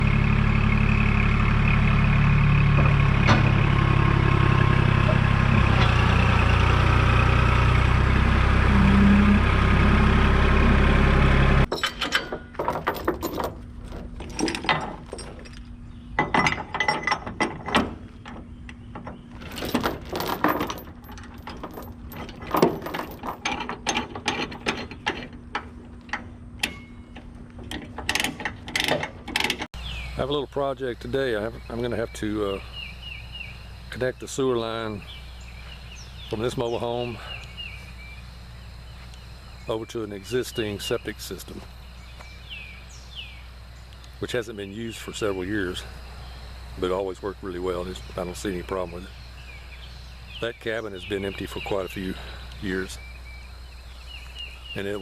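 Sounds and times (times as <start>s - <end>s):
diesel engine running: 0.0s - 11.7s, 12.7s - 55.0s
clicks and knocks: 11.7s - 29.7s.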